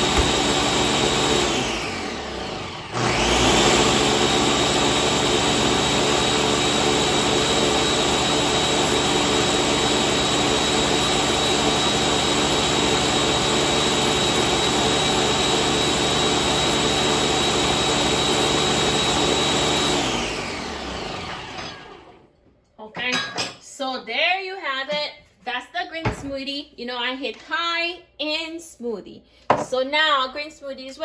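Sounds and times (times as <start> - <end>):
blender motor spinning down: 0.0 - 22.2
blender running with high whine: 0.0 - 22.2.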